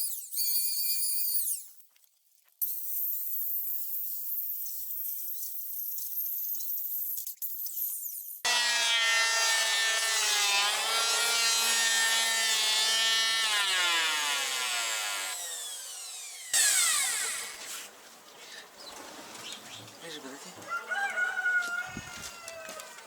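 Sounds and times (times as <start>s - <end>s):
electric hand planer planing wood: 8.5s - 18.4s.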